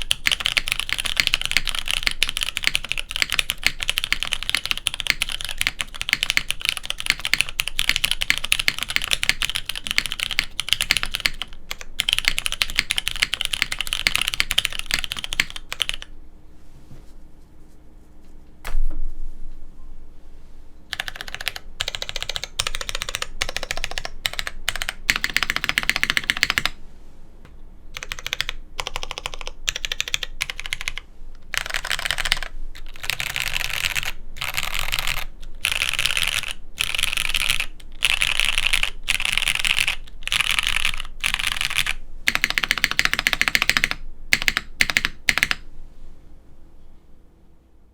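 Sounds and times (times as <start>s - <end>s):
mechanical keyboard typing: 0.0s - 16.1s, 20.9s - 26.8s, 28.0s - 45.6s.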